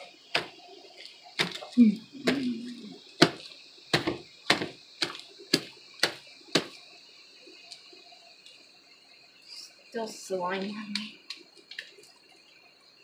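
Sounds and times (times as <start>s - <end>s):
slime being slapped by hand: 4.0s - 6.8s.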